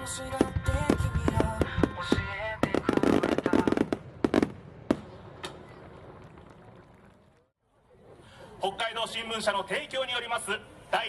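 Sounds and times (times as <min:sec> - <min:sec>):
music: 0:00.0 - 0:02.3
fireworks crackling and banging: 0:00.3 - 0:06.5.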